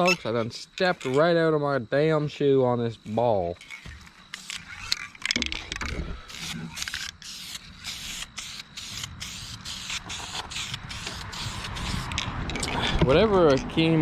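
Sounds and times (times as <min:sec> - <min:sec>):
spray paint can hissing: 0:06.3 - 0:12.3.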